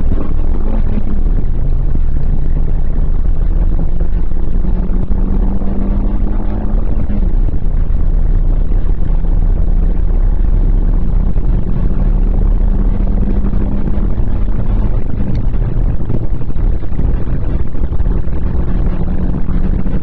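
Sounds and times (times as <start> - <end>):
car engine running: 0.0 - 20.0
wind and road noise: 0.0 - 20.0.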